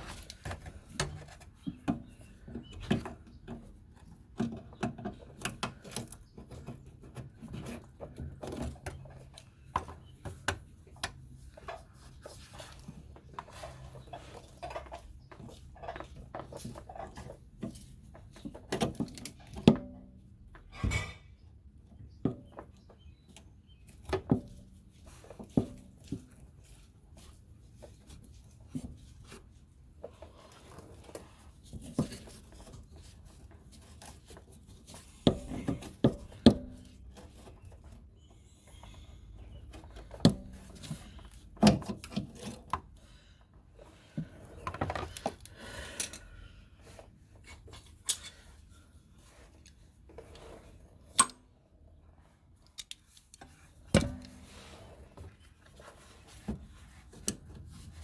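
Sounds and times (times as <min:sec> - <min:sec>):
tools clinking and scraping metal: 0:47.6 - 0:48.6.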